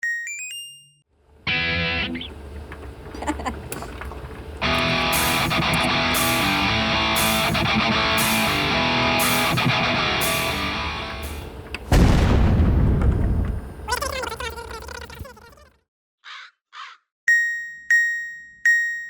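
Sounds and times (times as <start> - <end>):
guitar rock music: 1.5 - 2.4, 4.6 - 11.7
loud low rumbling noise: 8.6 - 14.0.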